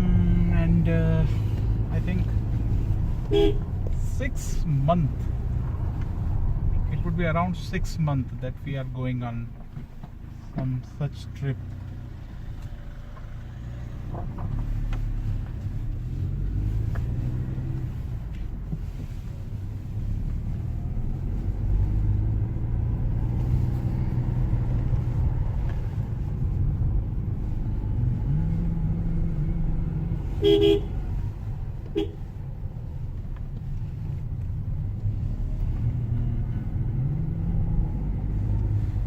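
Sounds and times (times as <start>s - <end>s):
car engine and road noise: 0.0s - 39.0s
car horn toot: 3.3s - 3.7s, 30.4s - 31.0s, 31.9s - 32.2s.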